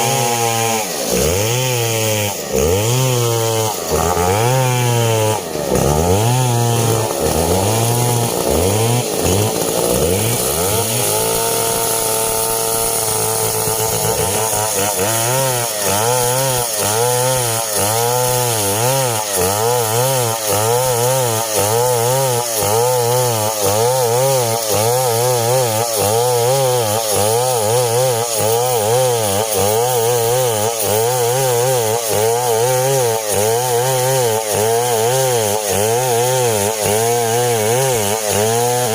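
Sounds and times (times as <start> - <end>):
chainsaw cutting timber: 0.0 - 38.9.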